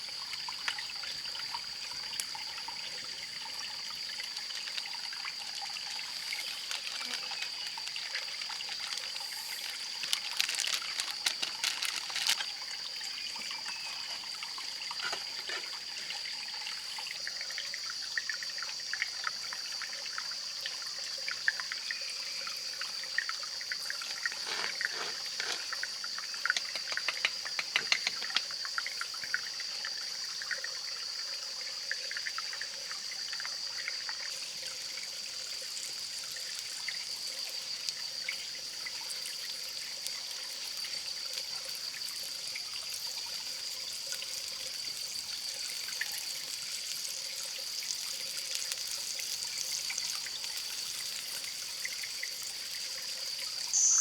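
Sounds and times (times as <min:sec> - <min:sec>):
water trickling: 0:00.0 - 0:54.0
small clicks and crackles: 0:04.2 - 0:12.6, 0:13.4 - 0:16.1, 0:24.0 - 0:28.5
steady high-pitched tone: 0:53.8 - 0:54.0.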